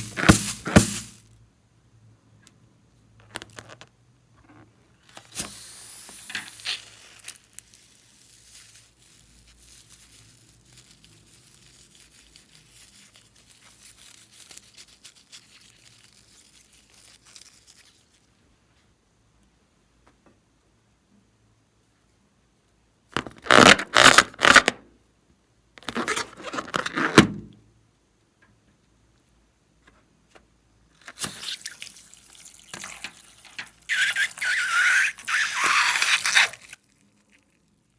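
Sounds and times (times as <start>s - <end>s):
tearing and crinkling: 6.4s - 18.3s, 23.2s - 24.8s, 31.0s - 37.9s.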